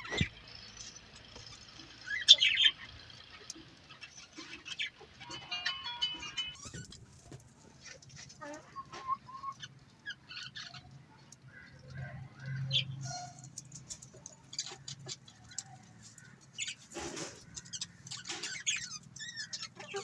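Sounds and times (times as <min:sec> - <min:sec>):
budgerigars chirping: 0:00.0 - 0:07.0, 0:07.8 - 0:11.0, 0:14.5 - 0:20.0.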